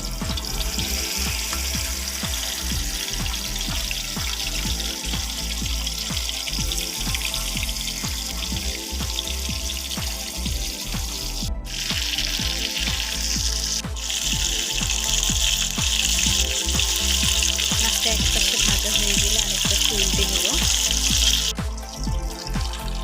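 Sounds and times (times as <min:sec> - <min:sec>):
background music with a beat: 0:00.0 - 0:23.0
fish sizzling in hot oil: 0:00.0 - 0:23.0.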